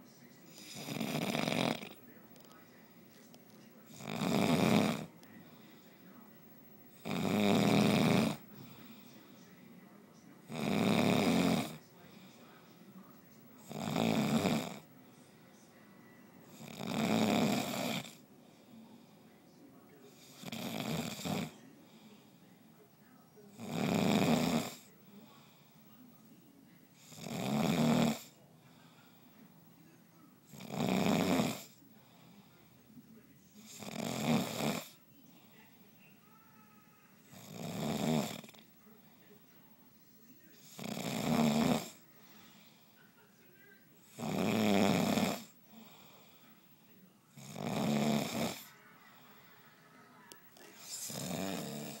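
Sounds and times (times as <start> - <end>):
quiet breathing: 0.0 - 52.0
person snoring: 0.5 - 2.0, 3.9 - 5.8, 7.0 - 9.1, 10.5 - 12.3, 13.6 - 14.9, 16.5 - 18.2, 20.2 - 21.5, 23.5 - 25.6, 27.0 - 28.4, 30.5 - 32.4, 33.6 - 35.0, 37.3 - 38.6, 40.6 - 42.9, 44.0 - 46.5, 47.4 - 49.4, 50.8 - 52.0.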